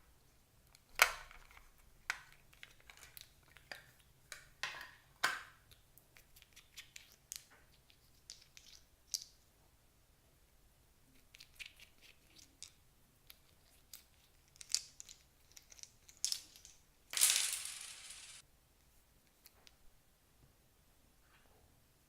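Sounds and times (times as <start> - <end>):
loud hiss: 17.2 - 18.4.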